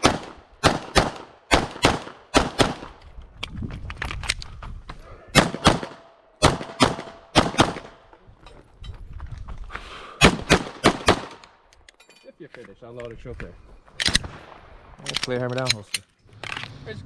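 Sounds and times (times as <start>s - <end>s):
pistol shots: 0.0s - 3.0s, 5.3s - 8.0s, 10.2s - 11.4s.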